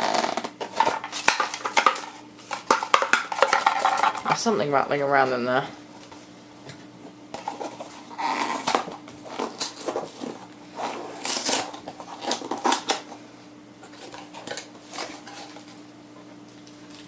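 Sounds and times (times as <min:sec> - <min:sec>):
packaging rustling: 0:07.4 - 0:13.2.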